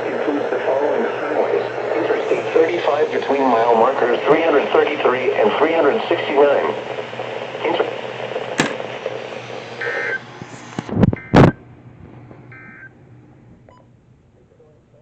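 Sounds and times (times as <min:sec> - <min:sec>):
loud sharp knocks: 0:08.6 - 0:08.8.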